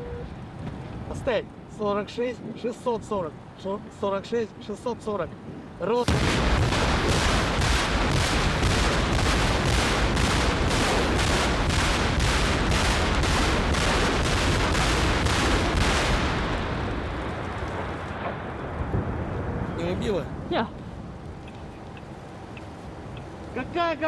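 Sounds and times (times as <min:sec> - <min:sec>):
rockets launching roar: 0:05.9 - 0:20.4.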